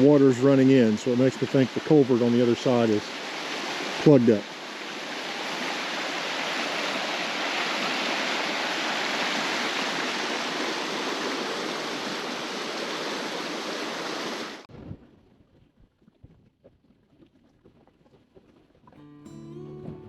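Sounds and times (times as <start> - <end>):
river water rushing: 1.2 - 14.6.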